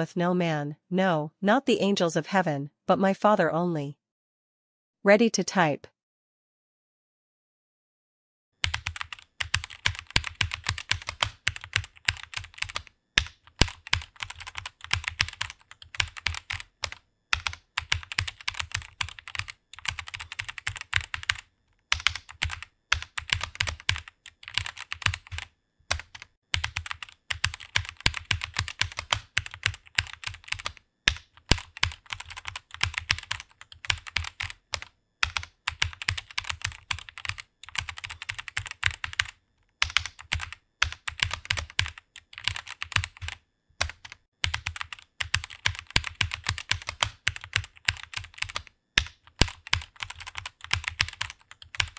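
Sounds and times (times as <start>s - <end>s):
computer keyboard typing: 8.6s - 51.9s.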